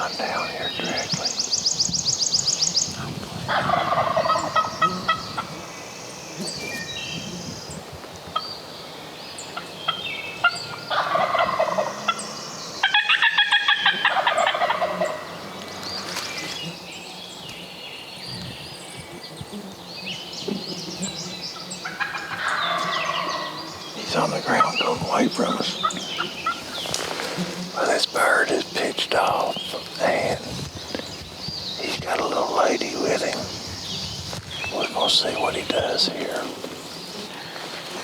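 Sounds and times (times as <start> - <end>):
turkey gobbling: 10.9 - 12.2, 12.8 - 15.3.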